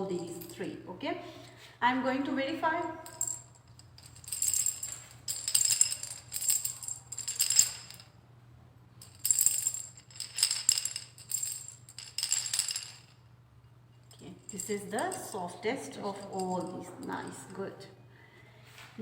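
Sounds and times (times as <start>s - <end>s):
cylinders rattling when shaken: 3.0s - 8.1s, 9.0s - 13.2s, 14.1s - 15.4s, 16.1s - 17.6s.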